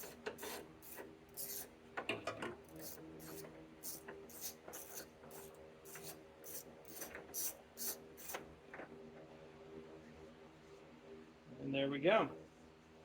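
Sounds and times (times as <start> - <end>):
hand tool turning a bolt: 0.0 - 1.7, 2.7 - 8.4.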